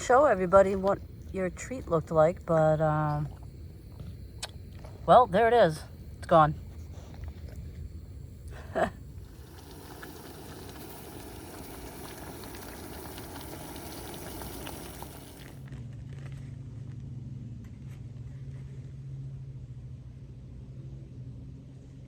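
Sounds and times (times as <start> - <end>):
water boiling in a pot: 0.0 - 15.7
steady low hum: 0.0 - 22.0.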